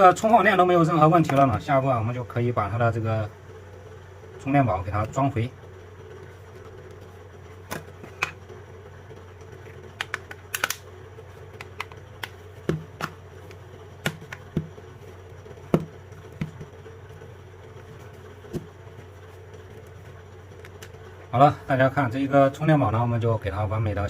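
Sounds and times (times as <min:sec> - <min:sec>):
steady low hum: 0:00.0 - 0:24.0
plastic casing clicking: 0:10.0 - 0:10.8.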